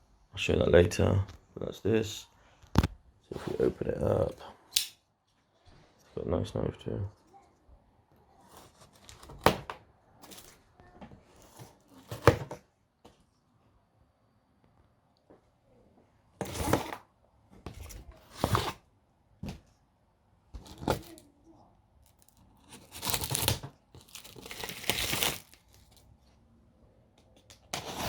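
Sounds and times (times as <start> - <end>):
cardboard box being torn open: 22.6 - 26.0.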